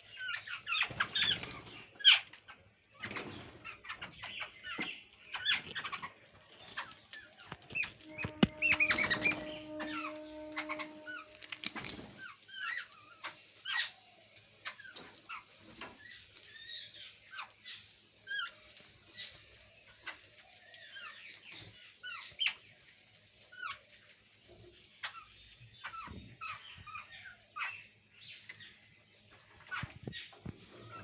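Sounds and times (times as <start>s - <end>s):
birds calling with harsh squeaky notes: 0.0s - 19.4s.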